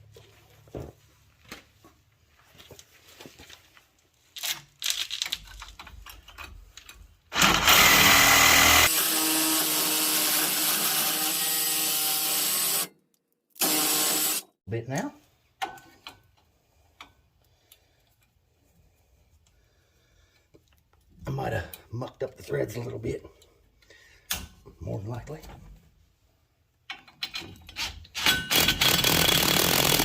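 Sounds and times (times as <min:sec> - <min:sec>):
reciprocating saw cutting bolt: 0:07.3 - 0:12.9, 0:13.6 - 0:14.5.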